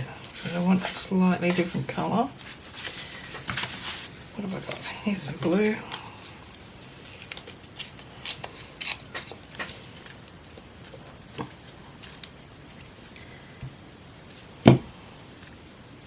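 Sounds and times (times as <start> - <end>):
paper rustling: 2.4 - 13.2.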